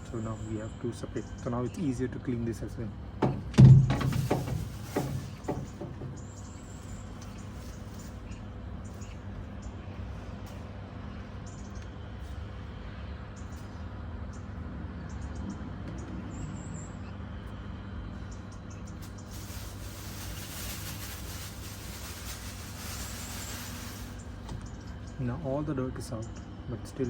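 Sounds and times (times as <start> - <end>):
plastic vacuum bin handling: 3.3 - 6.0
scratchy rustling: 4.0 - 5.8, 19.0 - 24.2.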